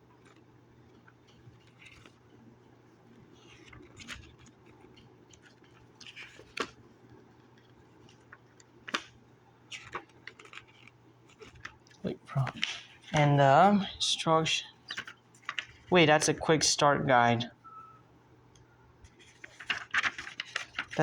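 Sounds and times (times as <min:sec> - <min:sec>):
paper rustling and crinkling: 0:00.1 - 0:02.5, 0:03.1 - 0:13.4, 0:14.9 - 0:16.0, 0:19.0 - 0:21.0.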